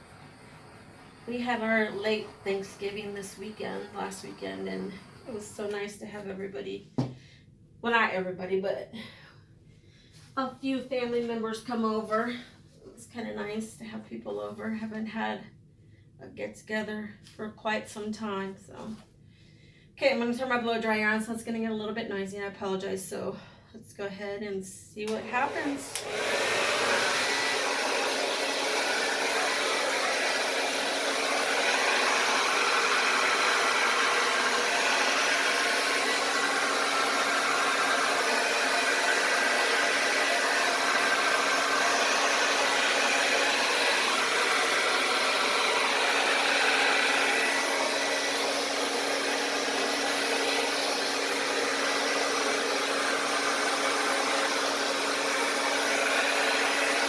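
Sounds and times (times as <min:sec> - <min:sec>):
blow dryer running: 0:00.0 - 0:05.9, 0:25.1 - 0:57.0.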